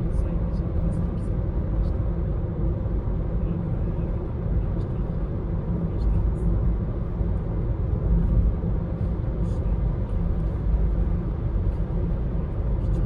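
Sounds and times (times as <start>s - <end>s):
road and tyre rumble: 0.0s - 13.0s.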